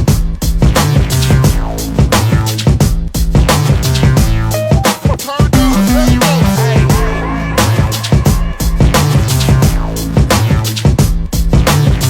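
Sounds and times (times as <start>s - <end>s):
electronic dance music: 4.5s - 10.2s.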